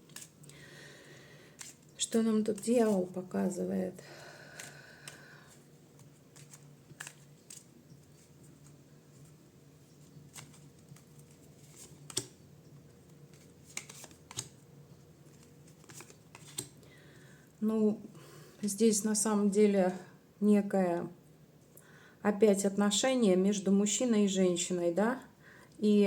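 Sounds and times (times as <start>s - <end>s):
cards tapping and rustling: 0.0s - 0.6s, 1.6s - 1.9s, 4.6s - 9.3s, 10.0s - 14.6s, 15.2s - 16.8s
low steady hum: 0.0s - 26.0s.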